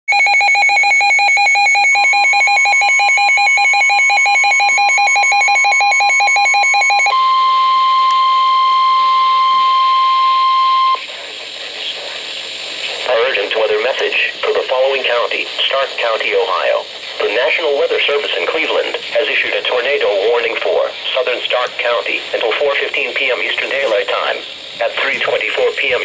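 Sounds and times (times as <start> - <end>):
rapid electronic alarm beeping: 0.1 - 11.0
steady warning tone: 0.1 - 11.1.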